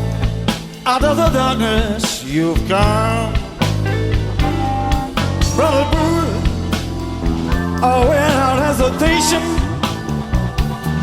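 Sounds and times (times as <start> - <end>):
bass: 0.0 - 11.0
steady drum beat: 0.0 - 11.0
lead guitar notes: 3.0 - 11.0.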